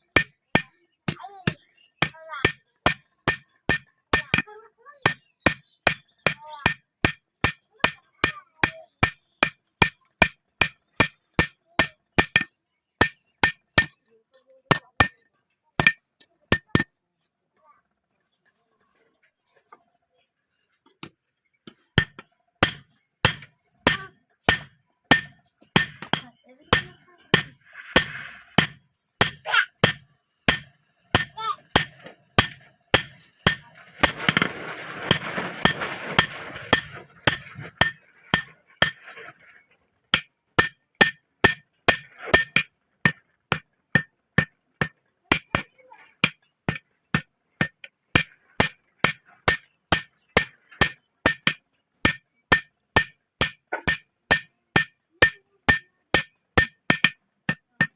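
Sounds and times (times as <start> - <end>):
hammer striking metal: 5.1 - 17.0, 22.0 - 34.5, 40.1 - 57.9.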